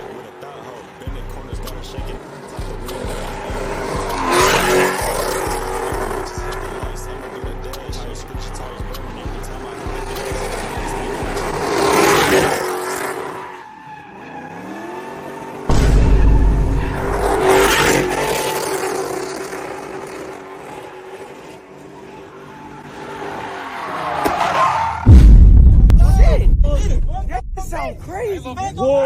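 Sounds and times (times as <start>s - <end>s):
car engine revving: 0.0s - 28.0s
heavy low rumble: 25.1s - 28.3s.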